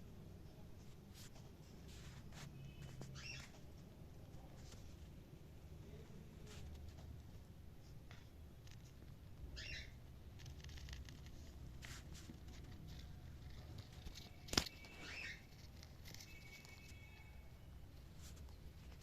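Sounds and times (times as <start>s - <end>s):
faint cockatiel chirps: 2.6s - 3.6s, 9.5s - 10.0s, 14.7s - 15.5s.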